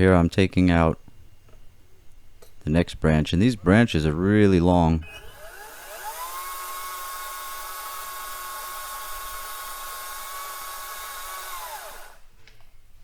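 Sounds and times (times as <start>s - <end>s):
chainsaw cutting branch: 5.4s - 12.2s.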